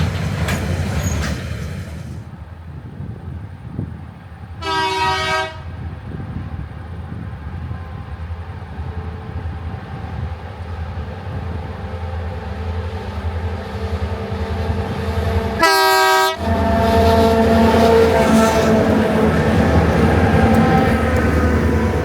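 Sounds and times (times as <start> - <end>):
diesel locomotives hauling train: 0.0 - 22.0
train horn blast: 4.6 - 5.8, 12.1 - 22.0.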